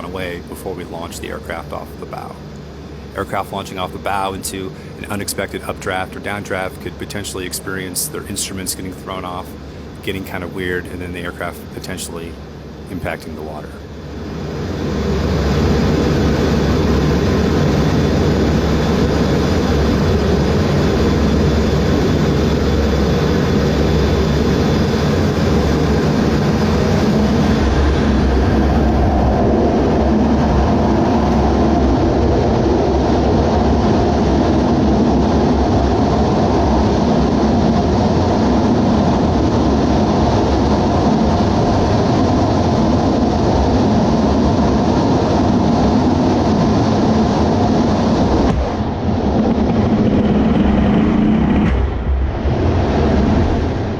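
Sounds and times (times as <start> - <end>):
jet engines roaring: 0.0 - 53.9.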